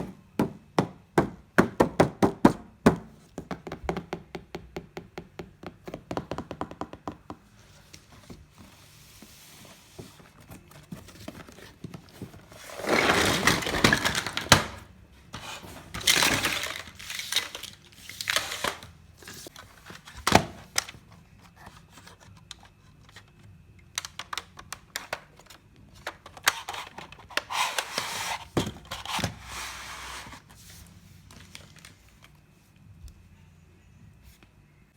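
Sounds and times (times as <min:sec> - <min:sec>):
packaging rustling: 0:09.9 - 0:14.8, 0:15.8 - 0:23.3
plastic pieces knocking: 0:16.0 - 0:18.8.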